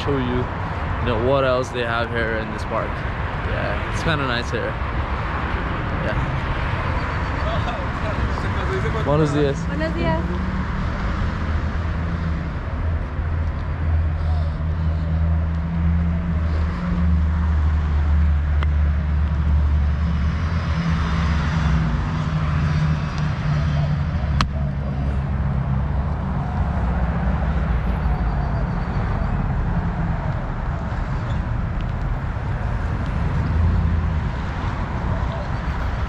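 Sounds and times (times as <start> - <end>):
road traffic rumble: 0.0 - 36.0
low engine hum: 7.7 - 35.4.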